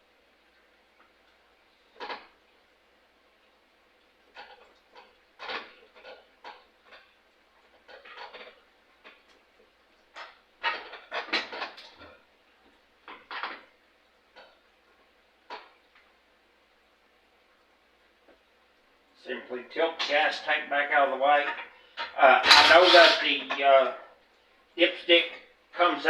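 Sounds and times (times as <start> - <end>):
metal tools clinking: 22.4 - 23.2.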